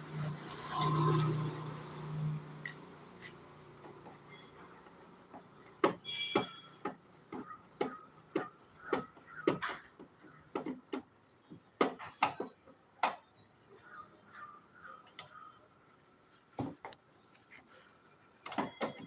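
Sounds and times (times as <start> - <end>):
knocks and clicks on washing machine: 5.3 - 13.2.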